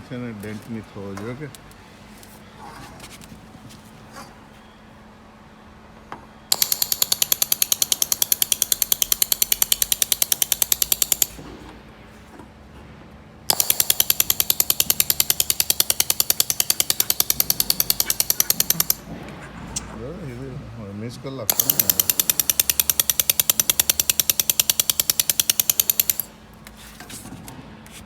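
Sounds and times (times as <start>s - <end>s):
laser welder crackling ticks: 6.5s - 11.4s, 13.5s - 19.0s, 21.5s - 26.3s.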